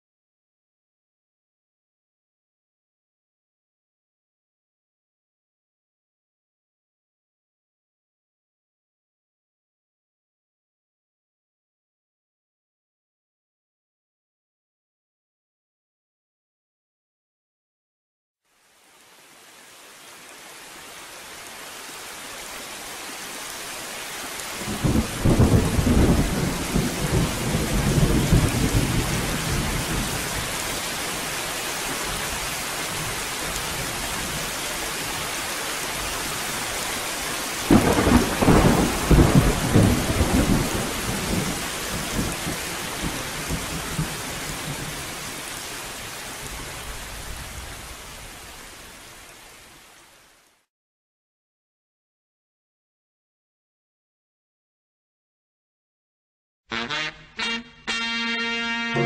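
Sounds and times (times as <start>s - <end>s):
heavy rain: 18.5s - 50.7s
thunder rolling: 37.7s - 41.6s.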